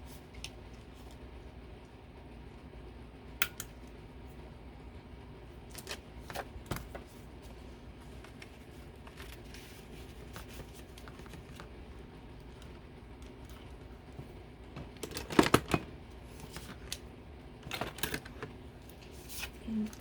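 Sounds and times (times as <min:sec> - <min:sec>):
paper rustling: 0:05.7 - 0:11.8.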